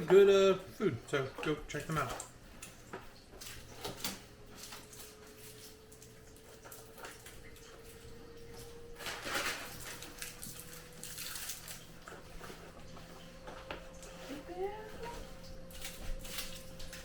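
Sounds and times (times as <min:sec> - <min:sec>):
candy packaging rustling: 0:04.4 - 0:13.1.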